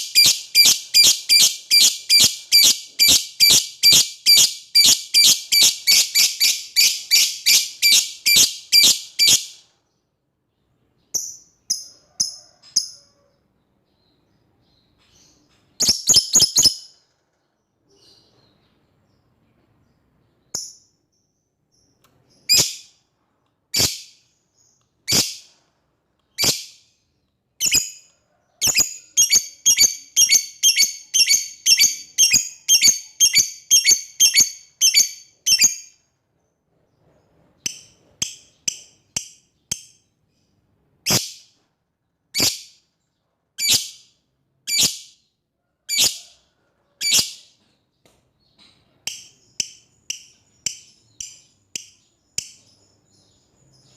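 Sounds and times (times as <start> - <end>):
lovebird high-pitched calls: 0.0 - 9.6, 15.8 - 16.9, 22.3 - 23.0, 23.7 - 24.2, 25.0 - 25.6, 26.3 - 26.8, 27.6 - 36.0, 42.3 - 42.8, 43.6 - 44.1, 44.7 - 45.2, 45.9 - 46.3, 47.0 - 47.6.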